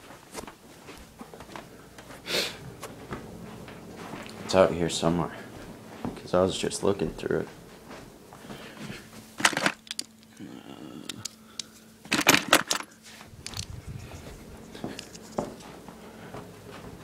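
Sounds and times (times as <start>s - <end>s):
hand tools clinking and clattering: 9.4s - 10.4s, 12.1s - 13.7s.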